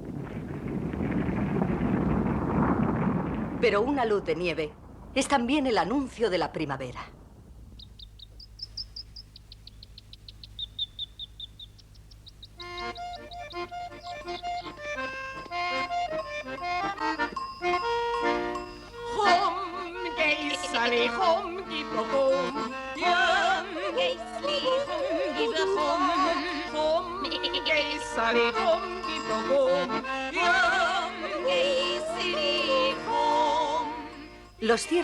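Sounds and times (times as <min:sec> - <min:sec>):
accordion folk music: 0:12.2 - 0:35.0
melody with strong vibrato: 0:12.6 - 0:20.8.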